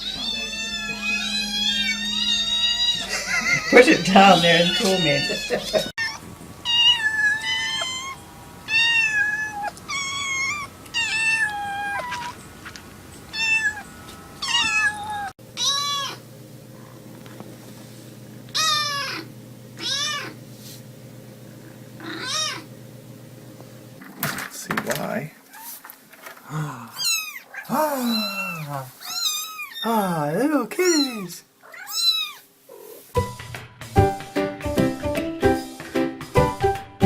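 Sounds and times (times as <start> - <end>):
cat meowing: 0.0 - 3.1, 4.4 - 12.4, 13.3 - 16.2, 18.6 - 20.4, 22.0 - 22.7, 26.9 - 30.0, 30.8 - 33.0.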